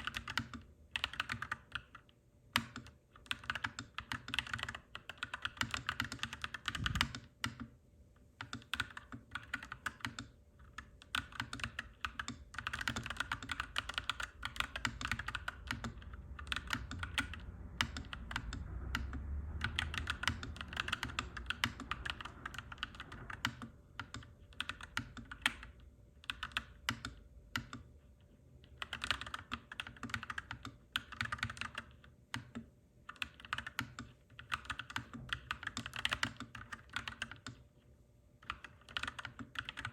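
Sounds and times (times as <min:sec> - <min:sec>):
mechanical keyboard typing: 0:00.0 - 0:07.8, 0:08.4 - 0:27.9, 0:28.6 - 0:37.6, 0:38.4 - 0:39.9
low rumble: 0:16.4 - 0:23.4.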